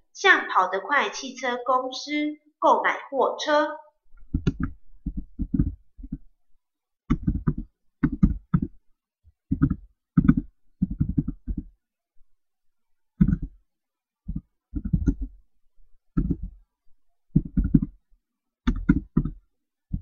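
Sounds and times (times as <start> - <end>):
computer keyboard typing: 4.3 - 6.2, 7.1 - 8.8, 9.5 - 11.7, 14.3 - 15.4, 17.4 - 18.0, 18.7 - 20.0.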